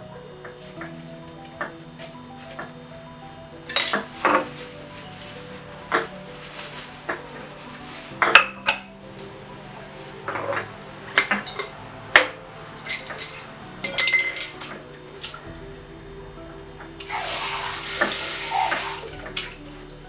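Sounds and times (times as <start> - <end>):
pots and utensils clattering: 3.6 - 15.8, 16.6 - 20.0.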